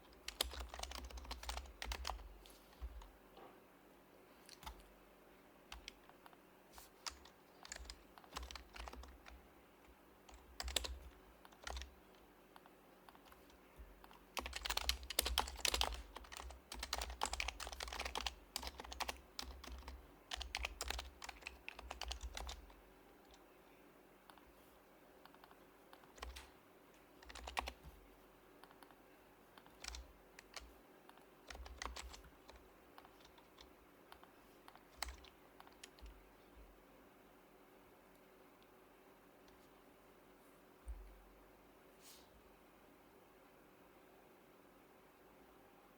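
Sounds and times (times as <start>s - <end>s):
soft muted keyboard typing: 0.0s - 3.6s, 4.4s - 5.0s, 5.6s - 36.8s.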